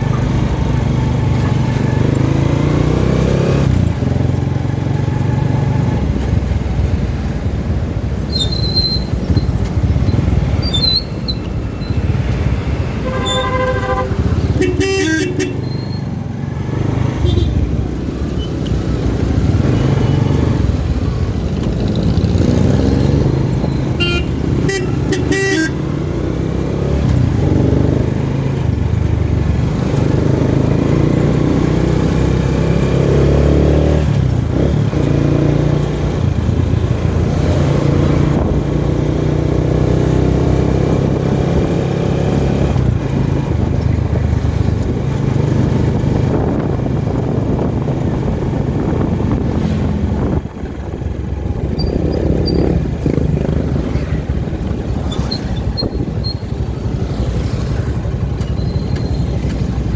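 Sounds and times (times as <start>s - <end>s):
vehicle engine drone: 0.0s - 59.9s
short horn toots: 13.0s - 15.9s.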